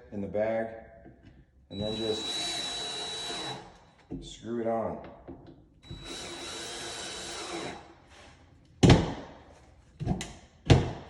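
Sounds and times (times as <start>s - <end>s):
power drill driving screw into wood: 1.7s - 3.7s, 5.8s - 7.8s.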